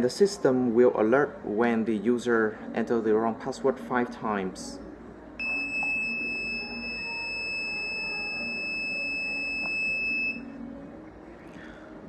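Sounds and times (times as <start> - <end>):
high-pitched electronic alarm tone: 5.4 - 10.5.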